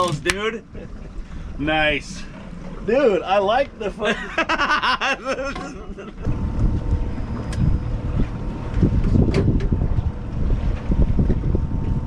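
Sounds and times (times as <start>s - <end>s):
wind buffeting microphone: 6.2s - 12.0s.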